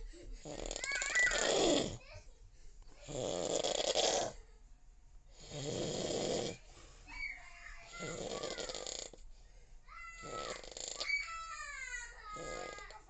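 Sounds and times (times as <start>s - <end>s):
snoring: 0.4s - 2.0s, 3.0s - 4.4s, 5.4s - 6.6s, 8.0s - 9.2s, 10.2s - 11.1s.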